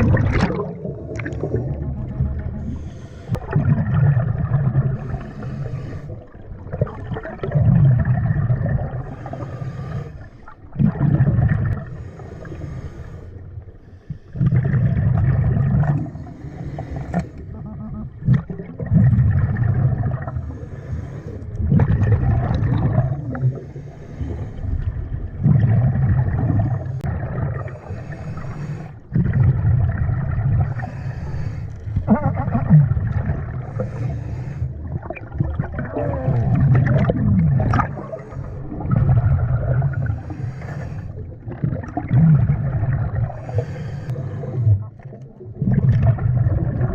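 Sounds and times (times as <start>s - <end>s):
bubbles gushing underwater: 0.0s - 5.4s, 6.1s - 9.3s, 10.5s - 12.1s, 14.3s - 16.2s, 17.4s - 20.6s, 21.5s - 23.6s, 24.6s - 28.2s, 29.0s - 31.0s, 31.9s - 34.1s, 34.7s - 46.9s
diver breathing through regulator: 2.4s - 3.6s, 4.8s - 6.6s, 8.8s - 10.8s, 11.7s - 14.6s, 15.8s - 17.5s, 20.2s - 21.7s, 22.8s - 25.0s, 26.6s - 29.7s, 30.5s - 32.1s, 33.4s - 35.0s, 37.8s - 39.0s, 39.6s - 41.5s, 43.2s - 45.0s.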